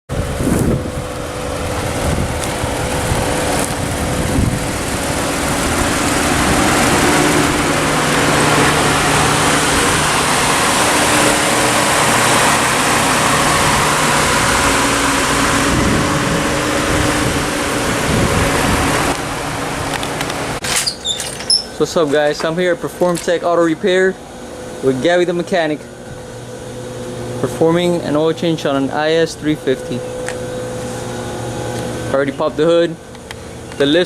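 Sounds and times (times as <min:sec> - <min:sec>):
car engine running: 0:00.1 - 0:20.6
steady low tones: 0:00.1 - 0:20.6.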